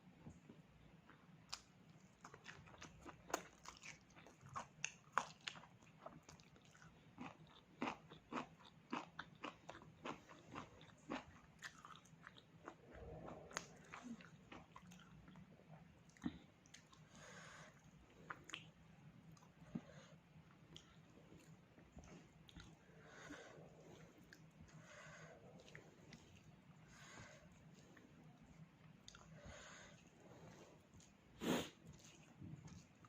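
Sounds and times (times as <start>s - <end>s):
crisp crunching chewing: 1.5s - 15.5s.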